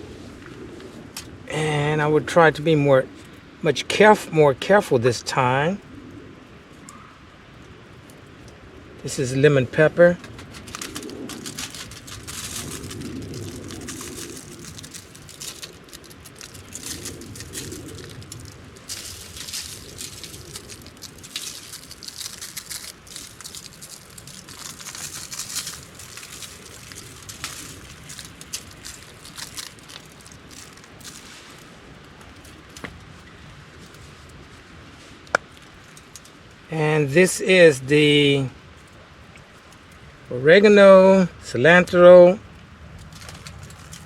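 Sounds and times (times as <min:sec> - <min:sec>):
shaker rustling and clicking: 0:10.1 - 0:33.2, 0:43.0 - 0:44.0.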